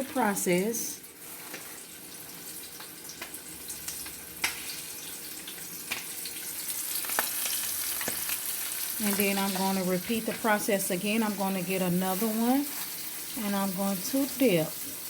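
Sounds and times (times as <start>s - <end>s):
chicken sizzling in oil: 0.0s - 15.0s
oil pops and crackles: 2.7s - 4.8s, 5.4s - 9.5s.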